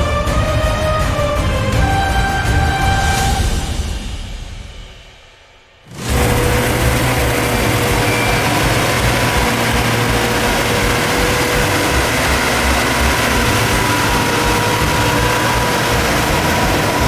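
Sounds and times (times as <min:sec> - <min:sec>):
music: 0:00.0 - 0:17.0
combine harvester engine rumble: 0:05.9 - 0:17.0.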